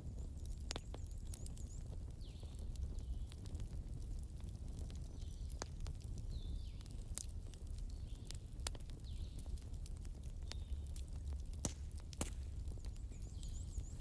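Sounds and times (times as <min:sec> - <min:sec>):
logs crackling and popping: 0:00.0 - 0:14.0
wood fire rumbling: 0:00.0 - 0:14.0.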